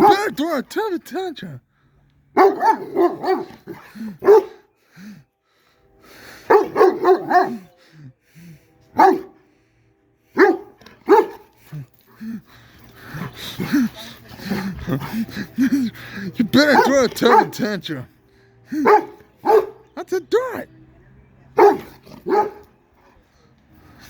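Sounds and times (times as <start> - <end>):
big dog barking and yowling: 0.0 - 0.4, 2.3 - 4.7, 6.4 - 7.7, 8.9 - 9.4, 10.3 - 12.1, 16.4 - 17.9, 18.7 - 19.9, 21.5 - 22.7.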